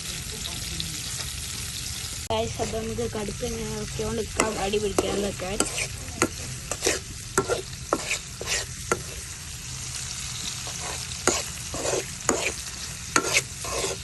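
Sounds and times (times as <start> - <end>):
mussels sizzling in oil: 0.0 - 14.0
spoon scraping pan: 4.2 - 9.4, 10.4 - 14.0.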